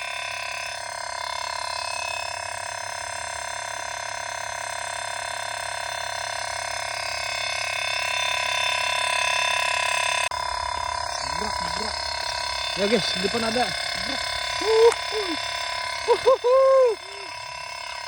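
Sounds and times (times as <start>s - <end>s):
frogs and insects trilling: 10.3s - 18.0s.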